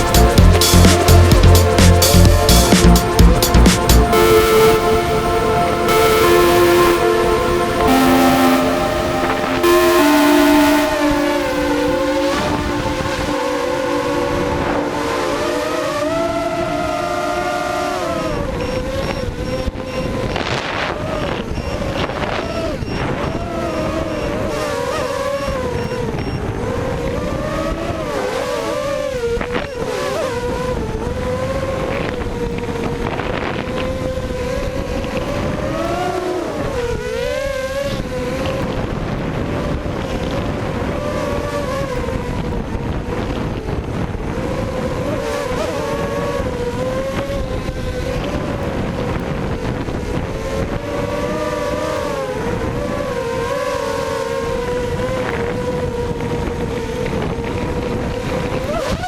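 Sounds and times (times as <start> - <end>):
drone propellers buzzing whine: 0.0 - 31.4.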